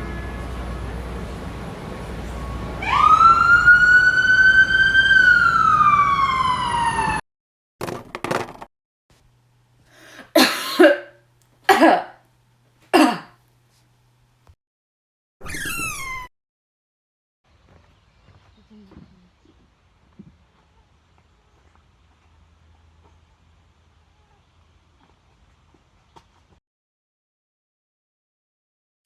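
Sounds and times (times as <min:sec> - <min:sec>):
traffic noise: 0:00.0 - 0:07.2
siren wailing: 0:02.4 - 0:07.2
person coughing: 0:10.3 - 0:11.1, 0:11.7 - 0:12.2, 0:13.0 - 0:13.4.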